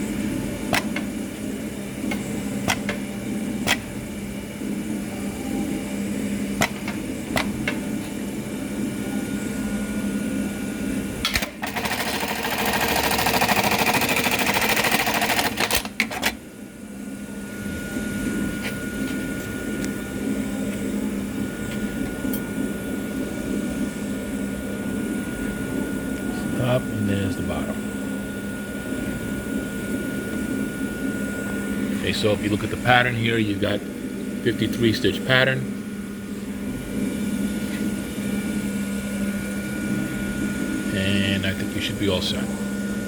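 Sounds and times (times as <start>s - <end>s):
machine hum: 0.0s - 43.0s
machine stitching rapidly: 11.3s - 16.4s
sharp machine clicks: 11.3s - 16.4s.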